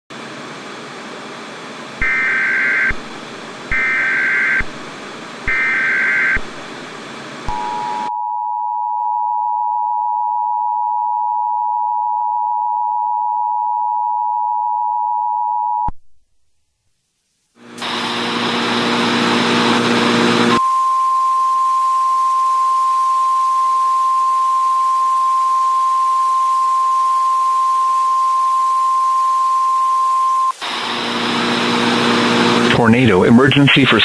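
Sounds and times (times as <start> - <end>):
tv static hiss: 17.2 - 20.6, 30.5 - 34.0.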